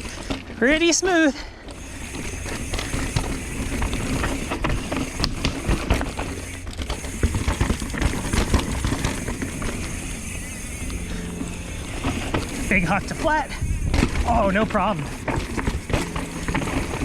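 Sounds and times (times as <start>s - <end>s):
bike rattling clicks and knocks: 0.0s - 17.0s
tyres rolling over rough ground: 0.0s - 17.0s
wind on microphone: 13.4s - 14.4s.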